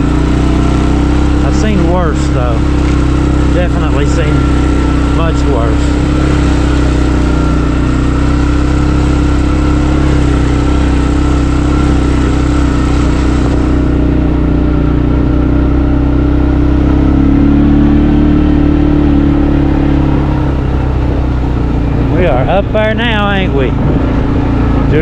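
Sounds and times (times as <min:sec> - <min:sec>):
vehicle engine running: 0:00.0 - 0:25.0.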